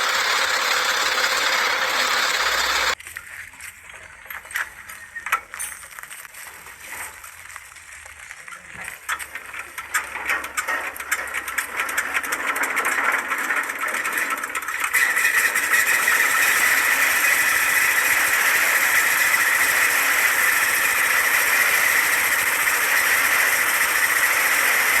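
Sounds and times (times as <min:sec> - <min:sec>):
diesel engine starting and running: 0:00.0 - 0:03.0, 0:11.0 - 0:25.0.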